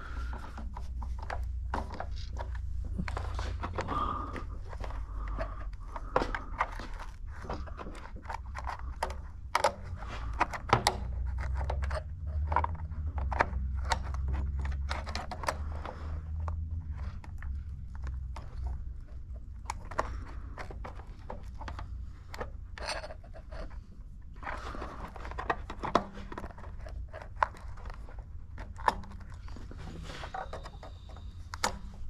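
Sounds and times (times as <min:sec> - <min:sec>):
clicks and scrapes of wires: 0:00.0 - 0:32.0.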